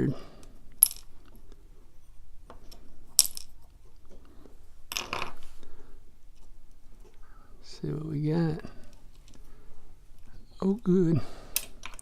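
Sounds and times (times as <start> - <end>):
small metal parts clinking: 0.8 - 1.4, 2.6 - 3.6, 11.5 - 12.0.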